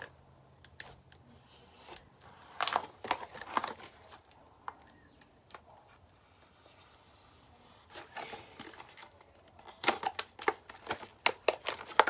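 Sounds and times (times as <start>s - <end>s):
knife cutting packaging: 7.8s - 12.0s.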